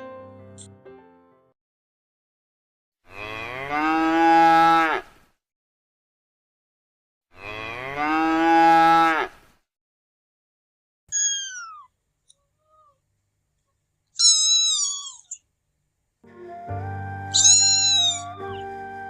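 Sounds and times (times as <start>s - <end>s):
cow mooing: 3.1s - 5.0s, 7.4s - 9.3s.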